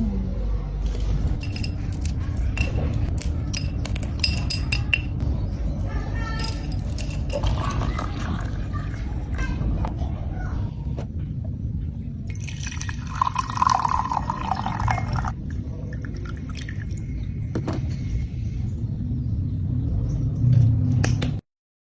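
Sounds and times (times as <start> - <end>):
steady low rumble: 0.0 - 21.4
water pouring into vessel: 12.3 - 17.0.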